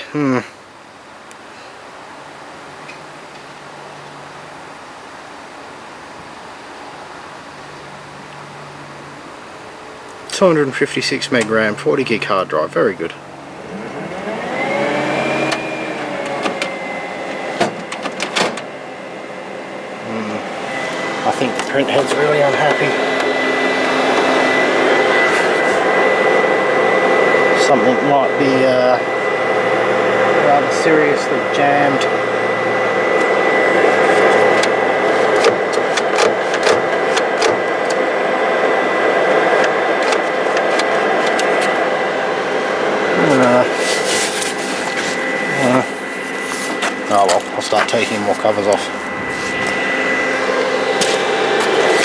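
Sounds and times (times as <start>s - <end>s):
printer motor whine: 2.9s - 52.0s.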